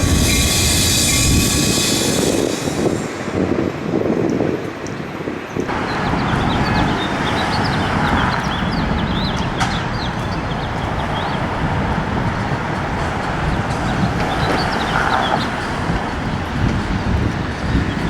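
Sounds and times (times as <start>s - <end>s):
small birds chirping: 5.7s - 11.7s.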